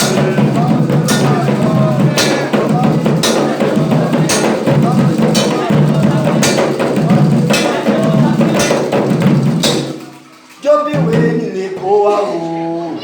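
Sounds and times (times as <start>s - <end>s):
person singing: 0.0s - 9.2s
drums playing a rhythm: 0.0s - 12.2s.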